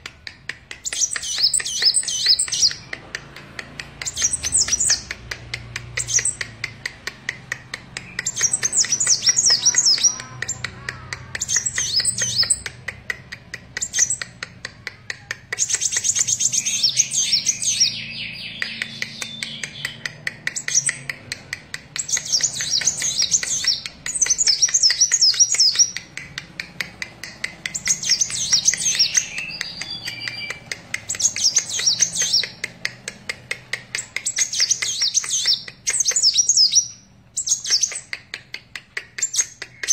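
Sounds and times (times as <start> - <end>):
sunbird singing: 0.8 - 2.9, 8.0 - 12.7, 15.6 - 21.1, 21.9 - 26.1, 27.6 - 32.6, 34.0 - 38.1.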